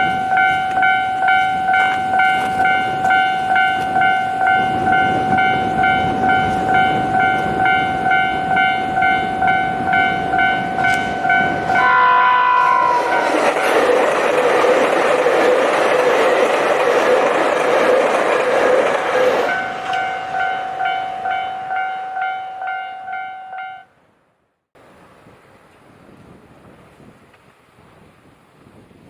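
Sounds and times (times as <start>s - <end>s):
level-crossing alarm bell ringing: 0.0s - 13.8s, 19.0s - 23.9s
train passing loudly: 0.0s - 23.9s
faint wind: 0.0s - 29.0s
train horn blast: 7.4s - 13.6s.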